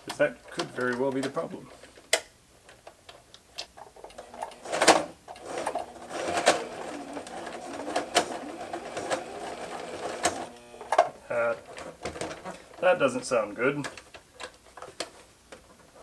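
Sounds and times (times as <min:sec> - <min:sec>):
sewing machine running: 0:04.3 - 0:11.0.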